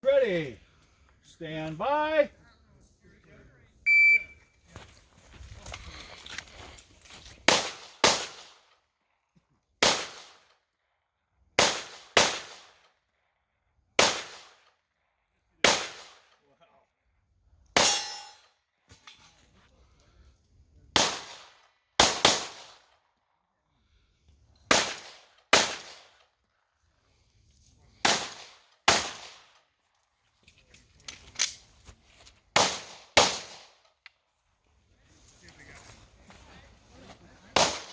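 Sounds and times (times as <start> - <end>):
pistol shots: 7.5 - 8.6, 9.8 - 10.4, 11.6 - 12.8, 14.0 - 14.6, 15.6 - 16.2, 21.0 - 22.8, 24.7 - 26.2, 28.0 - 29.5, 32.6 - 33.7, 37.6 - 37.9.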